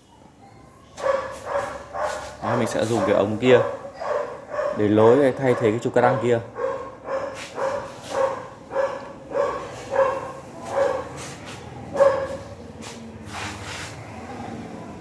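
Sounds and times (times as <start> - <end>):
dog barking: 1.0 - 12.6.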